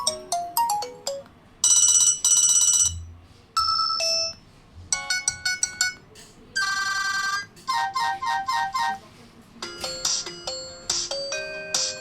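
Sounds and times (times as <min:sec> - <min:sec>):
mobile phone ringtone beeps: 0:00.0 - 0:03.0, 0:06.6 - 0:08.9.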